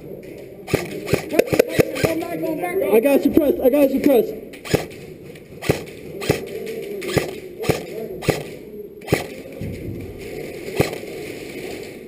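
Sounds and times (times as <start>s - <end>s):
airsoft gun shots: 0.7s - 2.2s, 7.1s - 9.4s.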